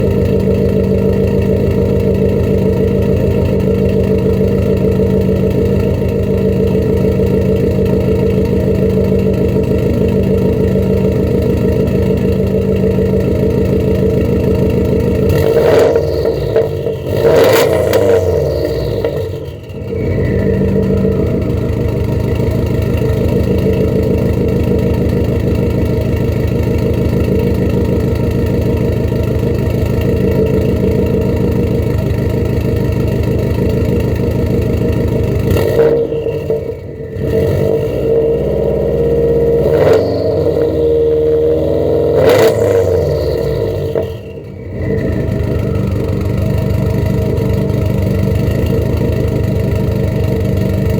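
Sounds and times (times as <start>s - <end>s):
car engine idling and revving: 0.0s - 50.9s
turbo whistle: 15.4s - 21.5s.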